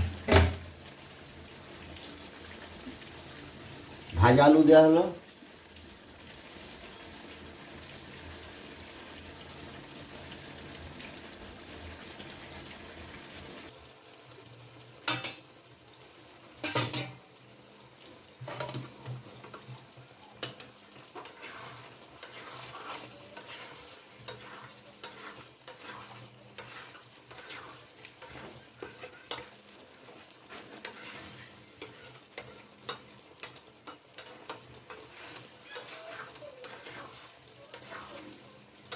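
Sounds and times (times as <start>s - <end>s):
food sizzling in oil: 0.0s - 38.9s
spatula scraping and knocking pan: 20.4s - 38.9s.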